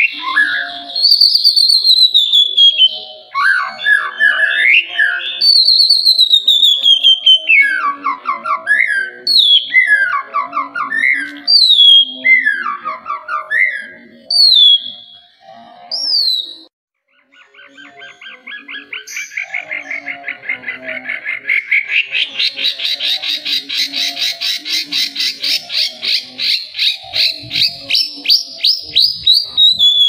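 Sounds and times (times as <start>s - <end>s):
bird singing whistles: 0.0s - 16.7s, 26.6s - 30.0s.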